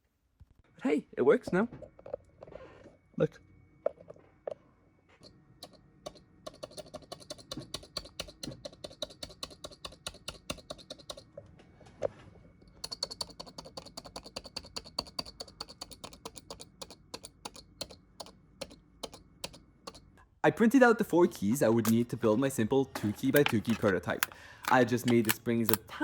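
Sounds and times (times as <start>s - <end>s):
keyboard keys clicking: 5.6s - 11.2s, 12.8s - 20.0s, 23.2s - 25.9s.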